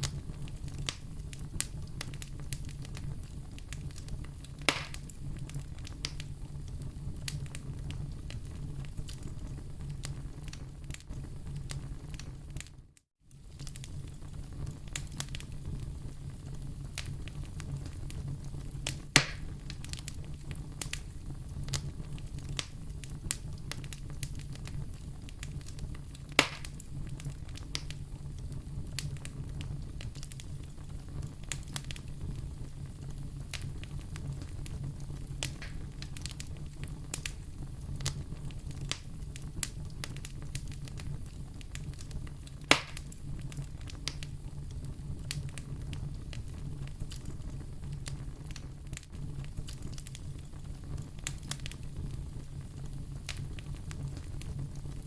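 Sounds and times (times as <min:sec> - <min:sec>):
fire snapping sharply: 0:00.0 - 0:06.3, 0:18.8 - 0:28.0, 0:33.2 - 0:52.1, 0:53.2 - 0:54.8
wood fire crackling: 0:00.0 - 0:55.0.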